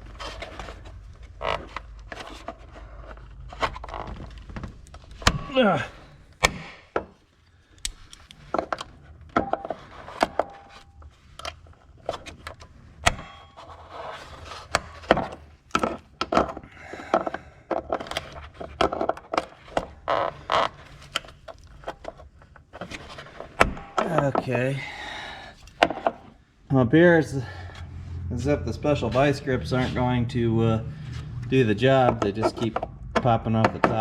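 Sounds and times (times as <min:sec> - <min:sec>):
locking pliers metallic clicks: 0:07.7 - 0:08.4.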